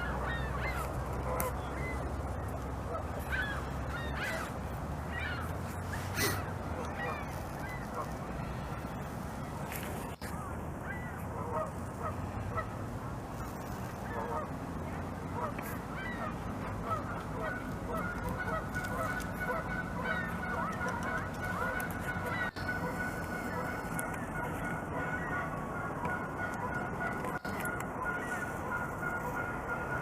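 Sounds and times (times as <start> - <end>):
geese honking: 0.0 - 9.0, 9.7 - 12.8, 13.4 - 30.0
low background rumble: 0.0 - 30.0.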